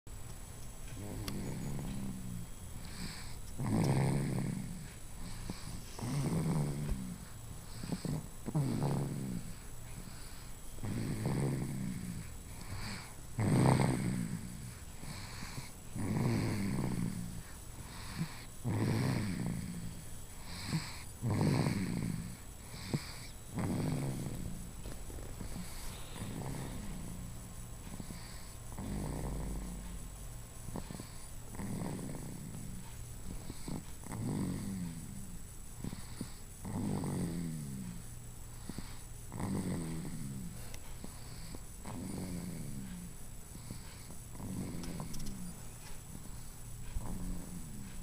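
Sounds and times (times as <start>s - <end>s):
person snoring: 1.0s - 27.4s, 28.0s - 29.9s, 30.7s - 32.8s, 33.4s - 38.0s, 38.6s - 45.5s
short snort: 20.5s - 29.9s.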